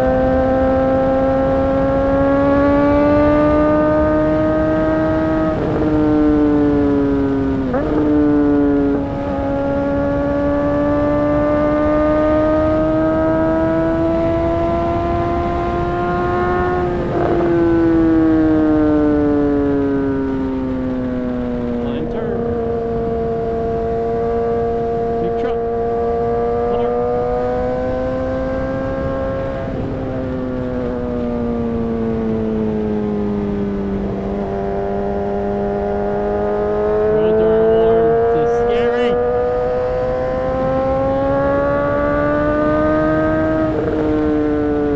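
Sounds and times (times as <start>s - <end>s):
motorcycle engine at high revs: 0.0s - 44.9s
wind noise rushing: 12.8s - 18.6s.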